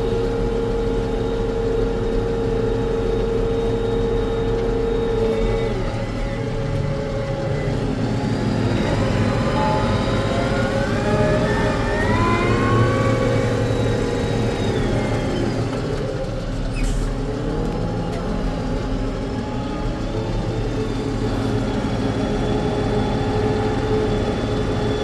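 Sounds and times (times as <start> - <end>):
tractor engine under load: 0.0 - 25.0
rising whine: 7.6 - 16.1.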